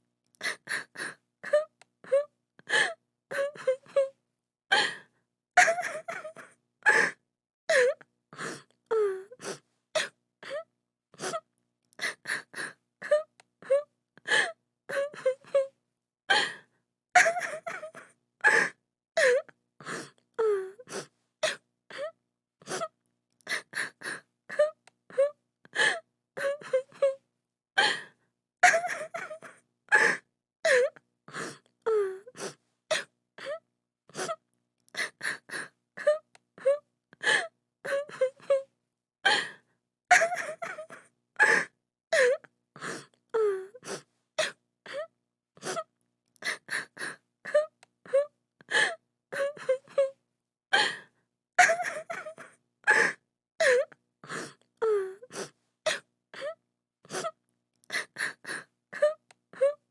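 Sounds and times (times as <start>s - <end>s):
woman sobbing: 5.6s - 8.0s, 17.2s - 19.5s, 28.6s - 31.0s, 35.0s - 38.7s, 40.1s - 42.4s, 51.6s - 53.9s.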